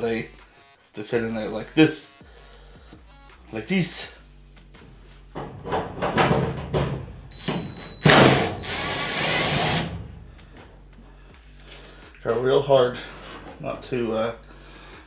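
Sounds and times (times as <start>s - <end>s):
tool scraping and rattling: 4.8s - 10.8s, 13.0s - 14.0s.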